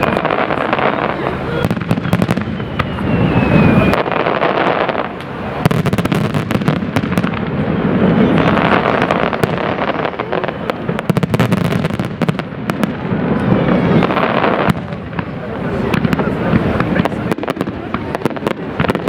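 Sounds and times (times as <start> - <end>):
fireworks bangs and crackling: 0.0 - 19.0.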